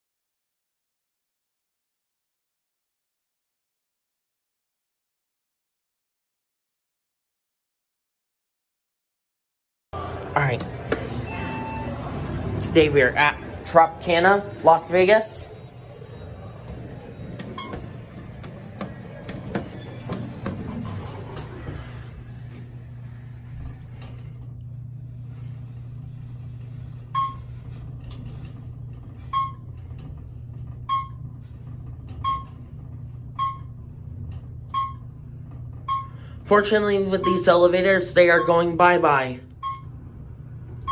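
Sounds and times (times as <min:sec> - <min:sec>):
steady low hum: 0:10.0 - 0:40.9
short electronic beep: 0:11.2 - 0:12.1, 0:27.2 - 0:27.5, 0:29.3 - 0:29.6, 0:30.9 - 0:31.2, 0:32.2 - 0:32.5, 0:33.4 - 0:33.7, 0:34.7 - 0:35.1, 0:35.8 - 0:36.2, 0:39.6 - 0:39.9.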